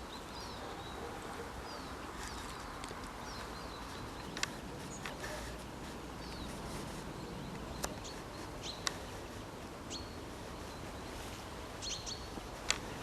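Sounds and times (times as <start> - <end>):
bird chirps: 6.1 - 9.2, 9.9 - 12.4.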